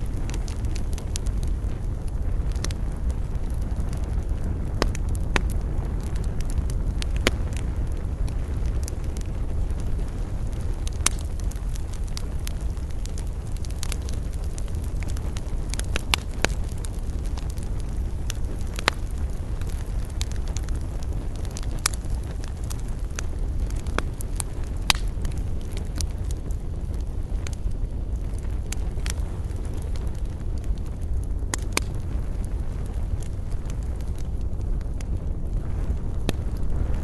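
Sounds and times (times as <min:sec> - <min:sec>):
campfire crackling and popping: 0:00.0 - 0:37.0.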